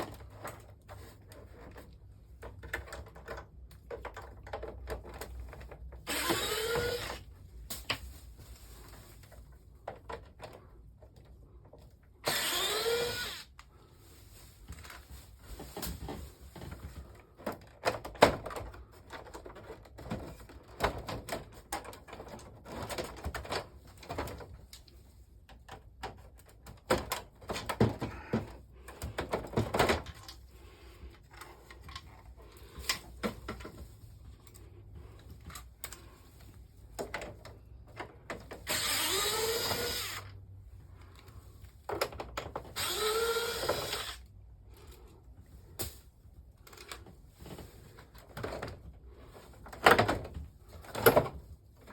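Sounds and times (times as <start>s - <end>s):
plastic clicks and knocks: 1.4s - 6.0s, 25.5s - 30.4s
cordless power driver whining: 6.0s - 7.3s, 12.2s - 13.6s, 38.6s - 40.4s, 42.8s - 44.3s.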